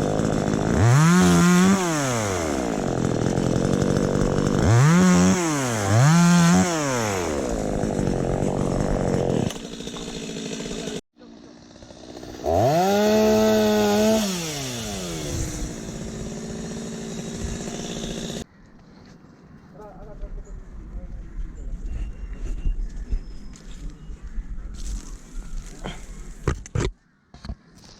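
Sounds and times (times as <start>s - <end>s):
chainsaw revving and idling: 0.0s - 18.4s.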